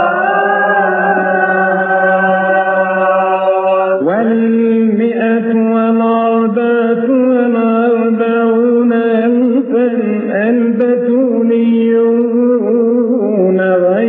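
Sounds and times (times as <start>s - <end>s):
man chanting wordless melody: 4.0s - 14.0s.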